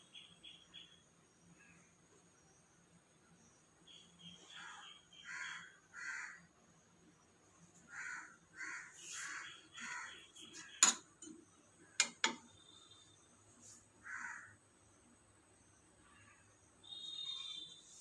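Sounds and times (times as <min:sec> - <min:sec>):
bird harsh calls: 0:03.9 - 0:06.4, 0:07.9 - 0:10.8.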